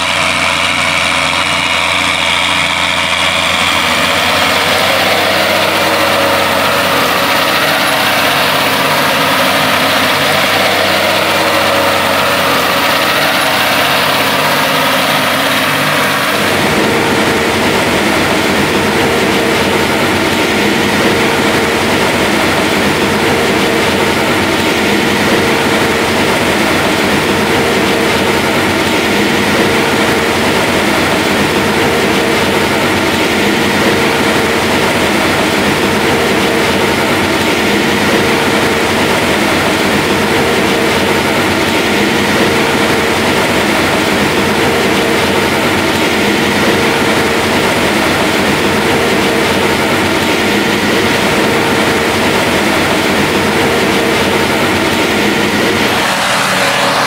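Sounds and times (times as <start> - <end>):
farm machinery engine running: 0.0 - 57.0.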